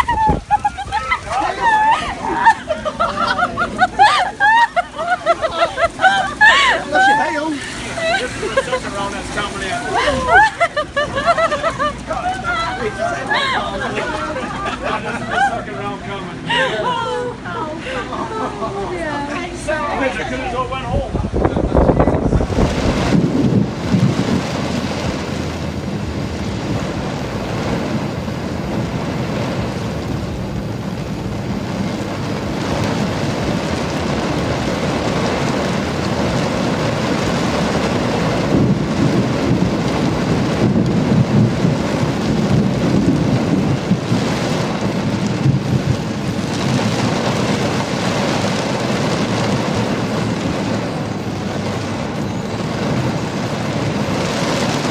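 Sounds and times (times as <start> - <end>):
steady rain falling: 0.0 - 17.2, 21.8 - 54.9
rumbling thunder: 21.2 - 54.9.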